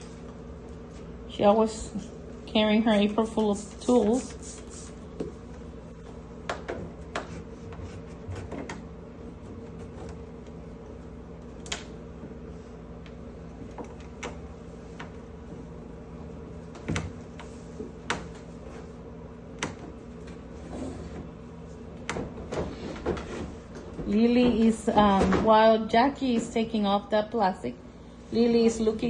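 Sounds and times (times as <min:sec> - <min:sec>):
steady low hum: 0:00.0 - 0:29.0.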